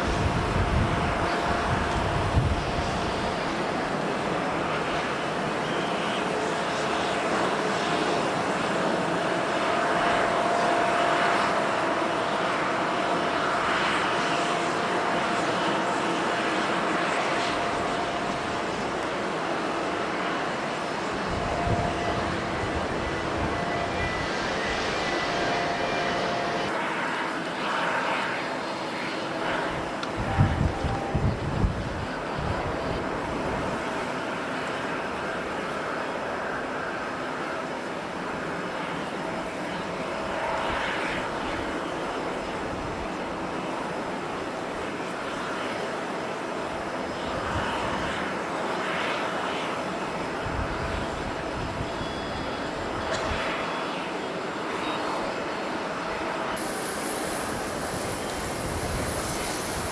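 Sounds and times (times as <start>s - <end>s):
wind buffeting microphone: 0.0s - 5.1s, 9.1s - 26.8s, 29.4s - 37.0s, 50.2s - 54.0s, 56.0s - 59.9s
jet engine roar: 0.0s - 59.9s.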